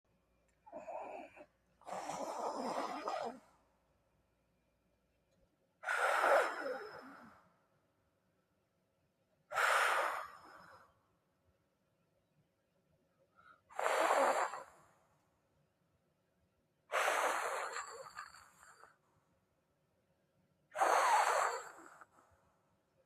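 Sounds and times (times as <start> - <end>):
person snoring: 0.7 - 3.4.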